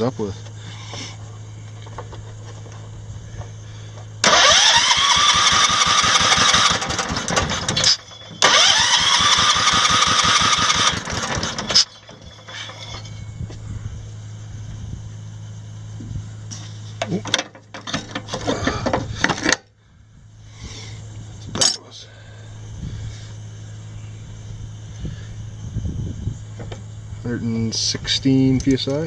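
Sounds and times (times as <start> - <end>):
engine cranked by electric starter: 3.4 - 13.1.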